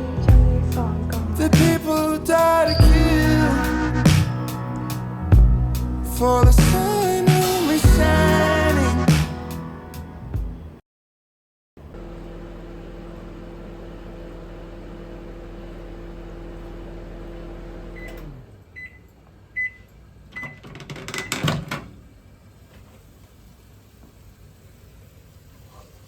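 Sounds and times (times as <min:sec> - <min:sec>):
microwave oven humming: 0:12.0 - 0:19.0
microwave beeps: 0:18.0 - 0:21.4.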